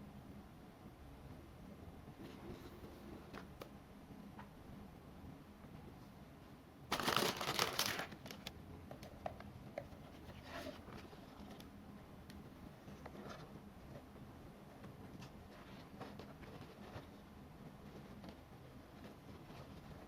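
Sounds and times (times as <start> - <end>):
packaging crinkling: 6.9 - 8.5.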